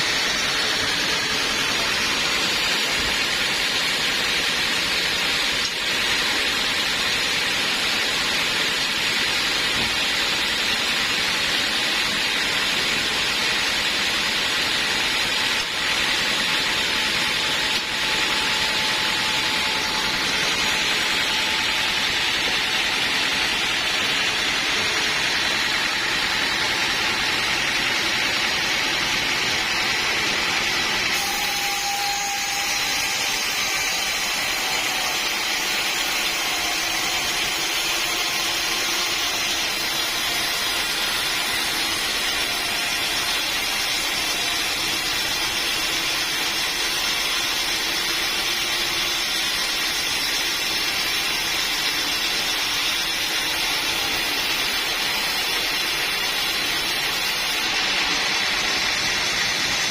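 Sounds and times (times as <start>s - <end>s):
sawmill saw running: 0.0s - 59.9s.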